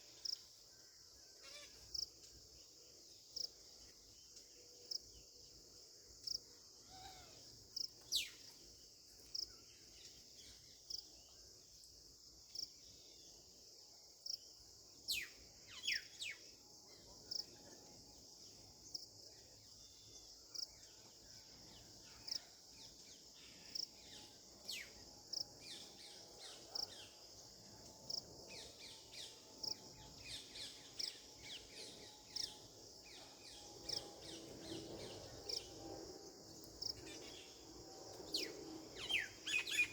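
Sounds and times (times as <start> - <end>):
sharp bird chirps: 39.0 - 39.9.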